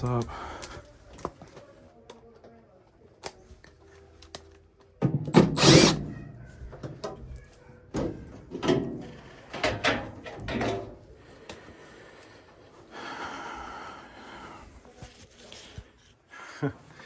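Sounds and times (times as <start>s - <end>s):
rasping sound: 5.4s - 6.2s
knocks and rattles of parts: 6.7s - 11.1s.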